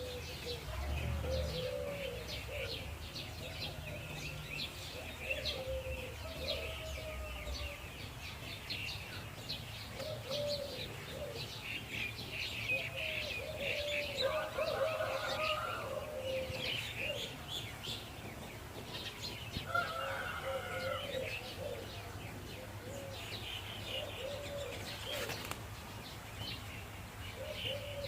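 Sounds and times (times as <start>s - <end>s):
low cooing notes: 0.0s - 7.7s
birds chirping: 0.0s - 28.0s.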